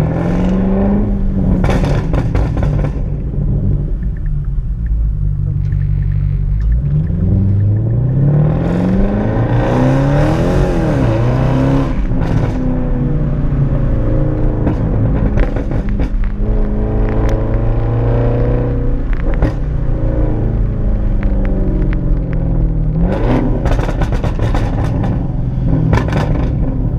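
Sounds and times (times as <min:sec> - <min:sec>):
car exhaust accelerating: 0:00.0 - 0:26.9
exhaust pops: 0:01.4 - 0:08.0, 0:11.8 - 0:12.8, 0:14.6 - 0:17.6, 0:18.9 - 0:20.0, 0:21.1 - 0:26.8.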